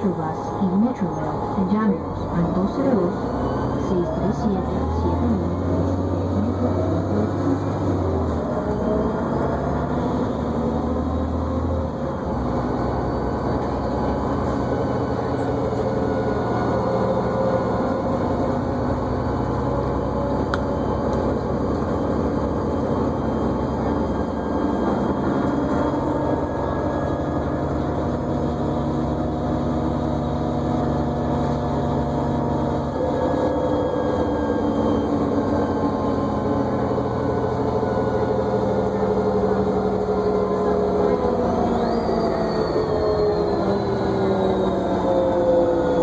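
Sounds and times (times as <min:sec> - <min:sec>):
bus engine whining: 0:00.0 - 0:46.0.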